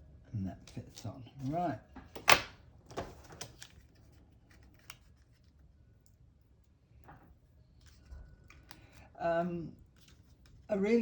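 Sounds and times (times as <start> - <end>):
paper card rustling: 0.9 - 5.6, 9.8 - 10.7.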